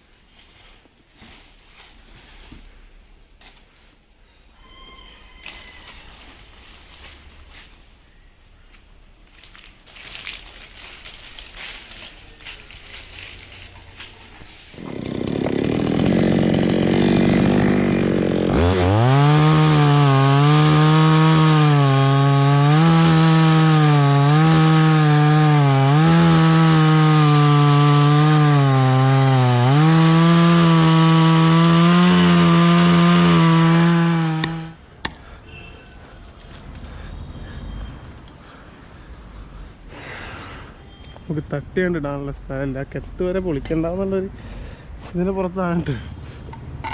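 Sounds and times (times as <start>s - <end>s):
chainsaw running: 14.8s - 34.8s.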